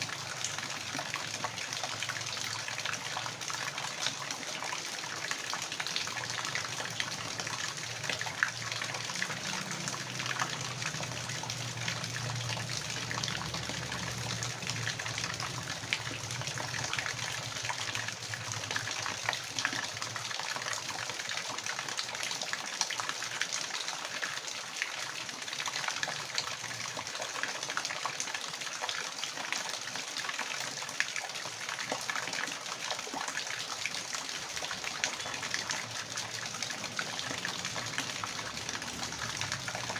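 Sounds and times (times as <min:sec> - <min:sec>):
water rushing: 0:00.0 - 0:21.4, 0:29.1 - 0:39.9
water splashes: 0:24.4 - 0:39.9.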